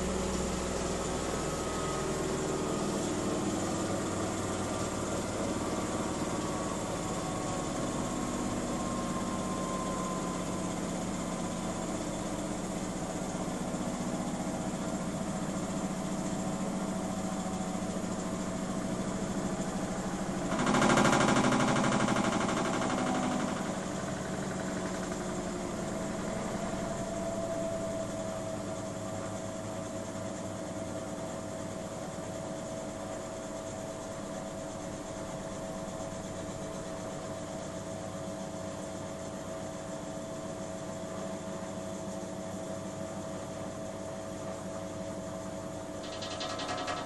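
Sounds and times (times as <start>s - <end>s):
washing machine drum spinning: 0.0s - 32.8s, 44.2s - 47.0s
loud washing machine noise: 0.0s - 47.0s.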